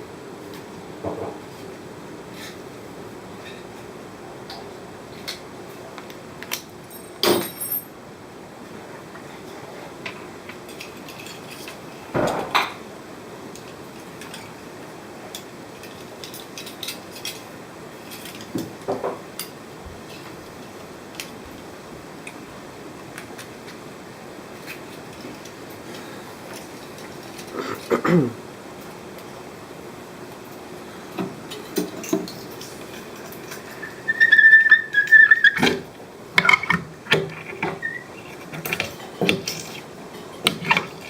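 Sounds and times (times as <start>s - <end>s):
tools clinking on metal: 6.9s - 7.9s.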